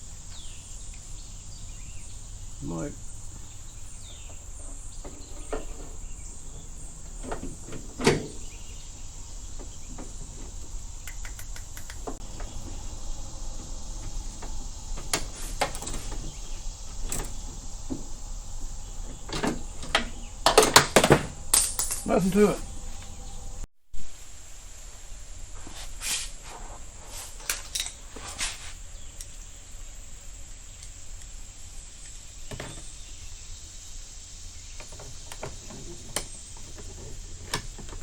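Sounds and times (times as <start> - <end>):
cricket drone: 0.0 - 28.2, 28.8 - 38.0
hand tools clicking and knocking: 9.6 - 12.5, 19.1 - 23.2.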